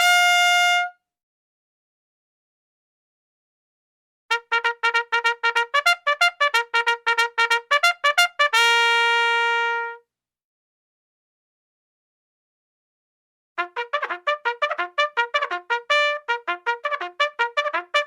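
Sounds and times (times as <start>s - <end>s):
bugle call: 0.0s - 1.0s.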